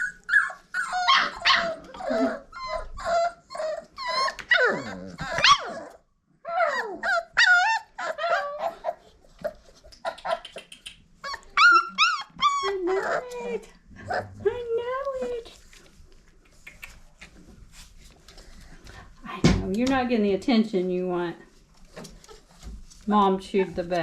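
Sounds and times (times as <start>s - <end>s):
puppies yipping and barking: 0.0s - 13.3s.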